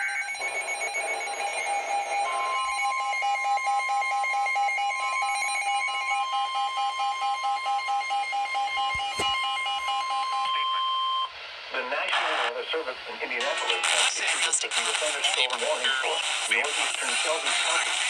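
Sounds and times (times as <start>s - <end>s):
pulsing electronic alarm beep: 0.0s - 11.3s
steady warning alarm tone: 0.0s - 11.4s.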